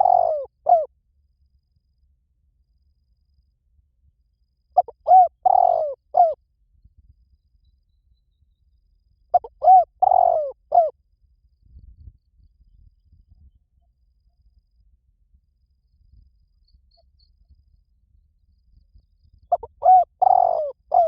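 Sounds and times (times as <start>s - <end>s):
dove cooing: 0.0s - 0.9s, 4.8s - 6.4s, 9.3s - 10.9s, 19.5s - 21.0s.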